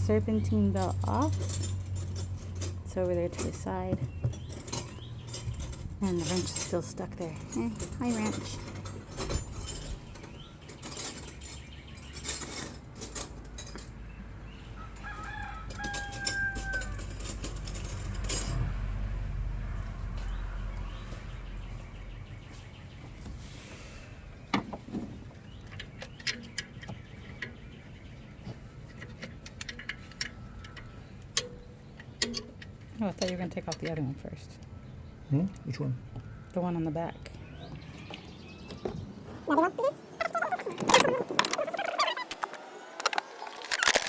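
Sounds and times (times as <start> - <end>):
rooster crowing: 14.8 - 17.2.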